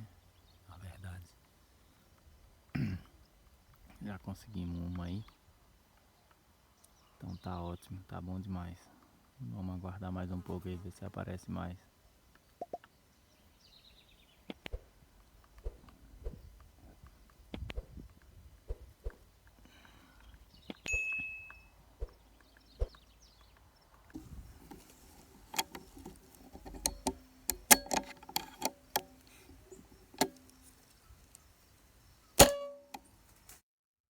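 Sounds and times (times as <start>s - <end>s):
short metallic ring: 20.9s - 21.7s, 25.5s - 30.7s, 32.4s - 33.1s
handling clicks and knocks: 24.1s - 31.5s, 32.4s - 33.5s.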